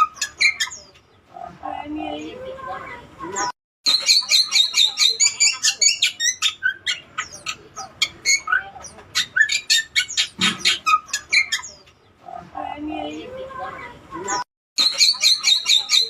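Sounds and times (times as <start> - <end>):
myna chirping and whistling: 3.9 - 11.9, 14.3 - 16.0.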